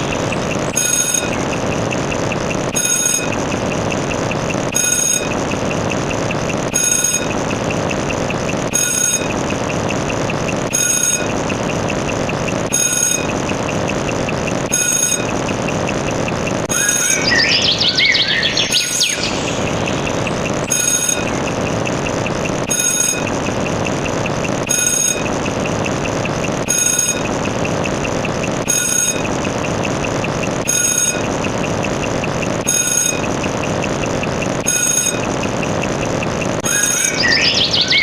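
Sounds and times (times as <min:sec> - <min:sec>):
short electronic beep: 0:00.0 - 0:03.4, 0:06.7 - 0:07.6, 0:08.6 - 0:10.0, 0:10.6 - 0:11.5, 0:12.7 - 0:14.0, 0:16.0 - 0:22.0, 0:28.6 - 0:29.7, 0:30.7 - 0:31.4, 0:32.6 - 0:33.7, 0:34.6 - 0:35.5, 0:36.4 - 0:38.0
engine-like rumbling: 0:00.0 - 0:38.0
fast high ticking: 0:00.0 - 0:38.0
squealing chirps: 0:16.6 - 0:23.5, 0:36.6 - 0:38.0.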